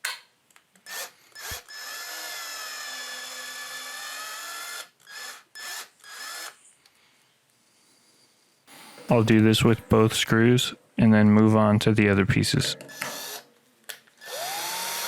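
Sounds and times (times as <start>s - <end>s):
cordless drill driving a screw: 0.8s - 6.6s, 12.9s - 13.4s, 14.2s - 15.0s.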